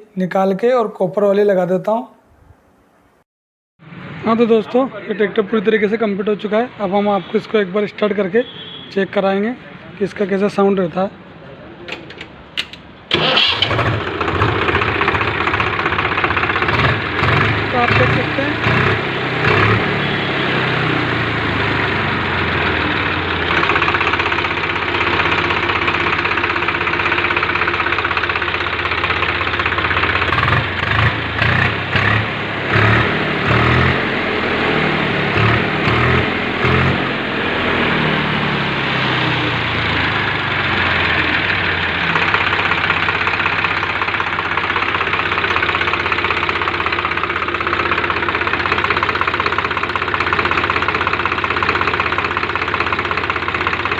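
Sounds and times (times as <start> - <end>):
tractor diesel engine idling and revving: 13.1 - 53.9.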